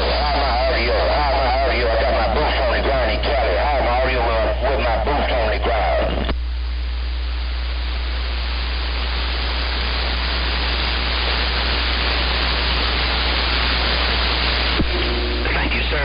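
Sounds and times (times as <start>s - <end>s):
low hum: 0.0s - 16.0s
radio static hiss: 0.0s - 16.0s.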